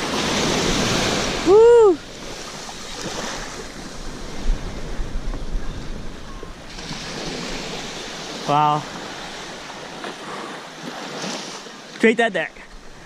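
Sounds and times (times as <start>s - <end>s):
wind buffeting microphone: 0.0s - 10.2s
ocean surf rushing: 0.0s - 13.0s.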